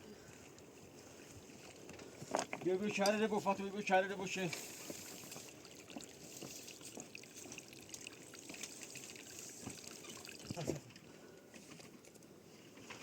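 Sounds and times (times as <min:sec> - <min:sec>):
river water trickling: 0:00.0 - 0:12.8.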